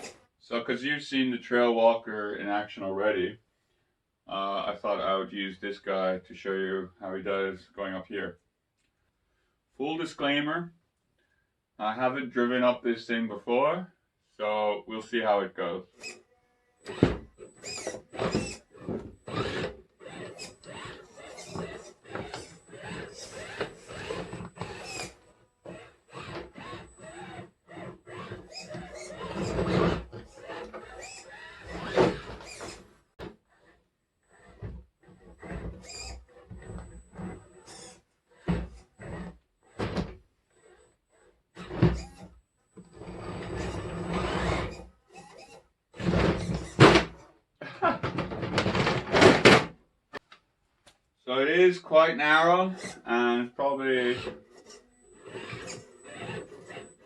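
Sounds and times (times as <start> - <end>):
toy truck bumping and scraping: 0.0 - 0.2, 15.9 - 16.2, 16.8 - 47.3, 48.0 - 50.3, 52.8 - 53.0, 54.0 - 57.0
small electric motor whining: 15.9 - 32.9, 33.5 - 39.9, 40.5 - 45.6, 52.7 - 53.0, 53.8 - 57.0.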